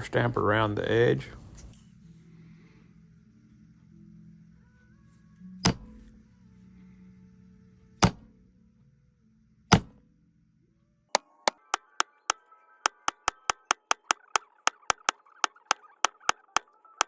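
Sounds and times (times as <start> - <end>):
mallet striking leather stamp: 5.6 - 6.0, 8.0 - 8.3, 9.7 - 10.0, 12.9 - 16.4.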